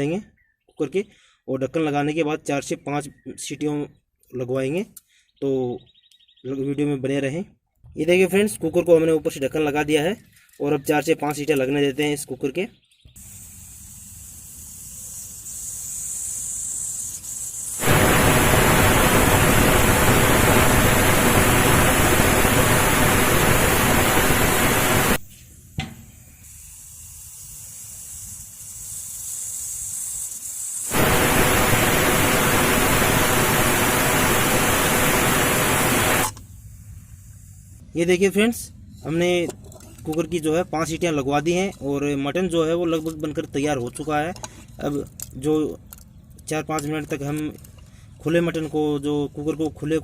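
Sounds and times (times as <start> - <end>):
pressure cooker hissing: 13.2 - 25.2, 29.9 - 37.4
pressure cooker whistle: 30.9 - 36.4.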